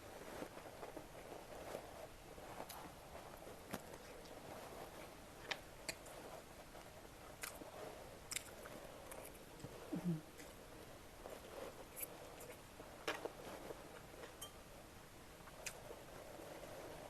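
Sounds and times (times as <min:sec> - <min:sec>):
person chewing food: 0:07.3 - 0:10.6.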